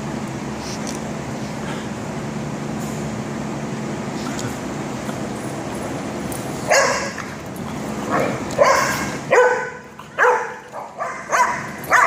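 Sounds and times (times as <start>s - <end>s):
steady low hum: 0.0s - 12.0s
dog barking: 6.7s - 7.2s, 8.1s - 12.0s.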